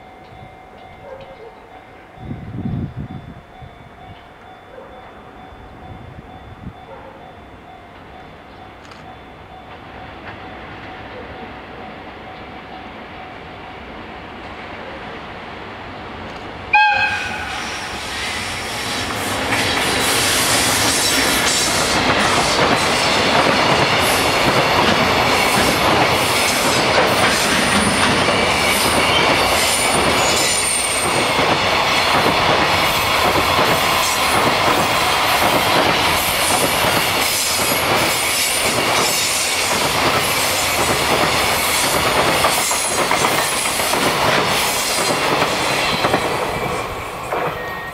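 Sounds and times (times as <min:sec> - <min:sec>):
freight train rumbling past: 0:00.0 - 0:47.9
locomotive horn blast: 0:16.7 - 0:18.3.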